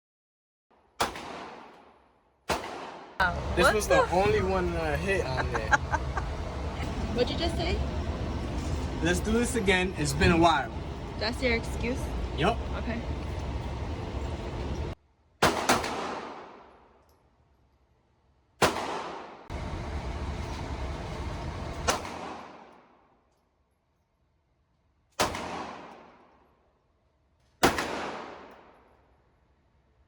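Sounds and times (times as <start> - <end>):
handgun shots: 1.0 - 1.8, 2.5 - 3.2, 15.4 - 16.7, 18.6 - 19.4, 25.2 - 26.2, 27.6 - 28.7.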